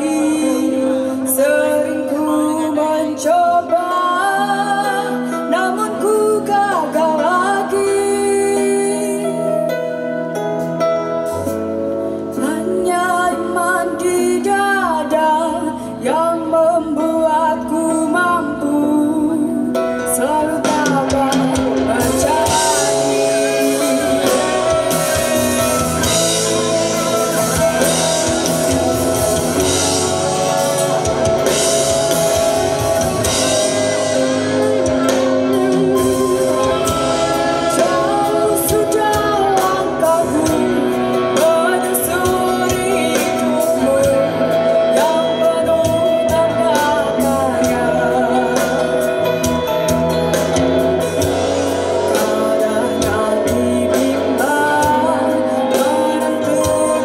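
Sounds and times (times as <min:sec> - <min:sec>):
person singing: 0:00.0 - 0:09.9, 0:12.2 - 0:57.0
guitar: 0:00.0 - 0:57.0
drum kit: 0:19.9 - 0:57.0.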